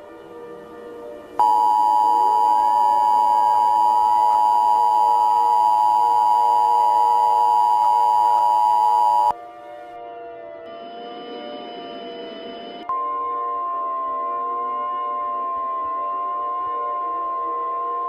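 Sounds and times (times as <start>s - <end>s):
two-tone alert beep: 1.4s - 9.3s.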